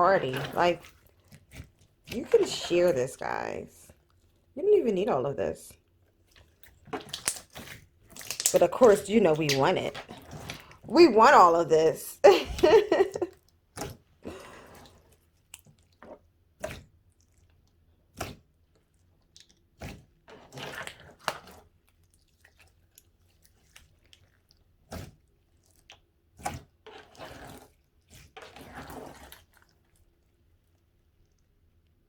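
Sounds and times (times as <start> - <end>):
slime squishing: 0.0 - 5.1, 6.1 - 11.6, 13.6 - 31.8
slime popping and clicking: 8.2 - 8.7.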